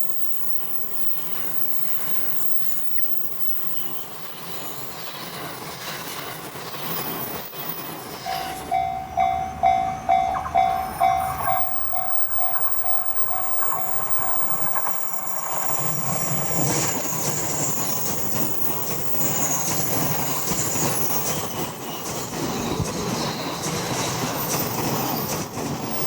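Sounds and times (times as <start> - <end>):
train running on rails: 0.0 - 26.0
level crossing alarm dinging: 8.3 - 17.2.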